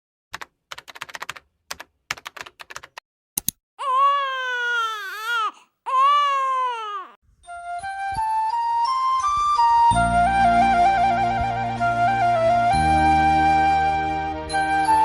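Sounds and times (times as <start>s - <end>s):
keyboard typing clicks: 0.3s - 3.6s
baby crying: 3.8s - 7.2s.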